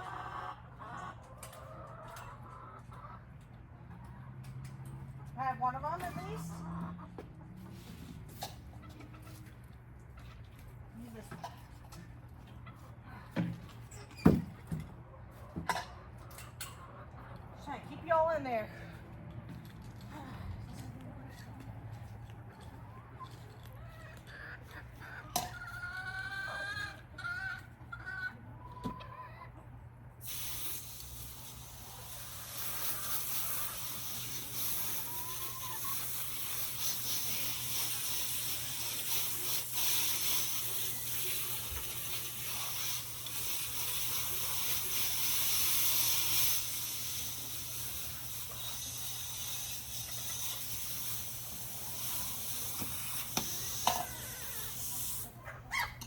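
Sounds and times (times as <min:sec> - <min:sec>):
chickens clucking: 0:00.0 - 0:18.1, 0:20.7 - 0:30.2, 0:31.3 - 0:39.6, 0:51.8 - 0:56.0.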